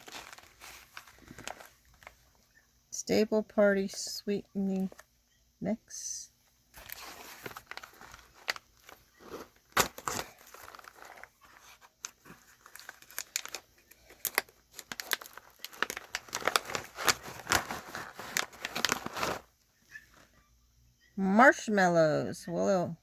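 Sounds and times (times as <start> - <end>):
packaging crinkling and rustling: 0.0 - 2.6, 6.7 - 20.3.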